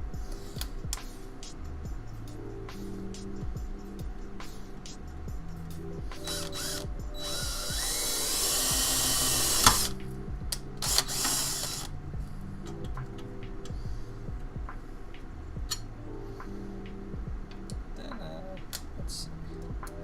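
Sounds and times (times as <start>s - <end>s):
cordless drill running: 6.2s - 10.0s, 10.8s - 11.9s.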